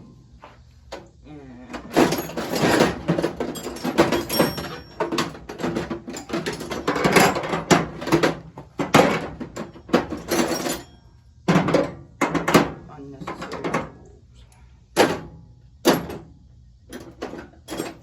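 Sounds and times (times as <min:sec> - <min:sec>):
hand tools clattering: 0:01.7 - 0:10.9.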